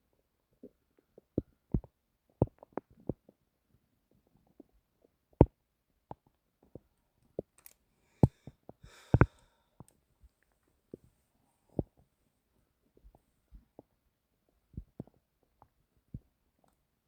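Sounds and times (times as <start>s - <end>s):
stomach gurgling: 0.1s - 7.5s, 12.9s - 16.7s.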